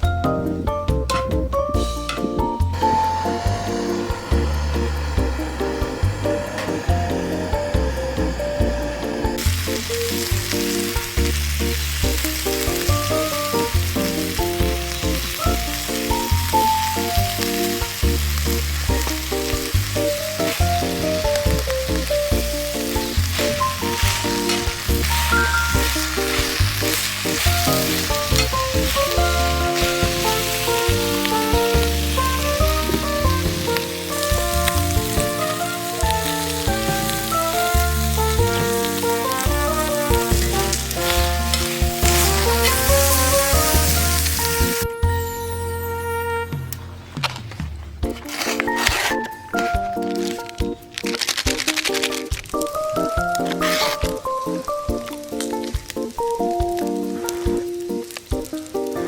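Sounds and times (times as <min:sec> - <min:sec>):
background music: 0:00.0 - 0:59.0
food sizzling in a pan: 0:02.2 - 0:44.9.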